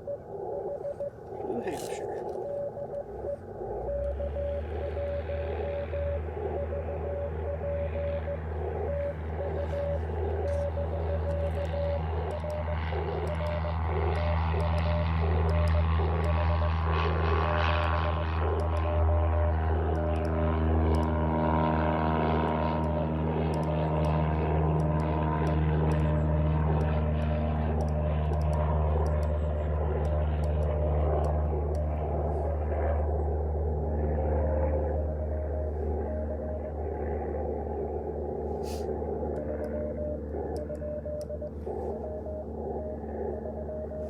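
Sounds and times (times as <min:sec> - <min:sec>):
morse code beeps: 0:00.0 - 0:16.6, 0:39.4 - 0:44.0
propeller airplane engine: 0:00.0 - 0:44.0.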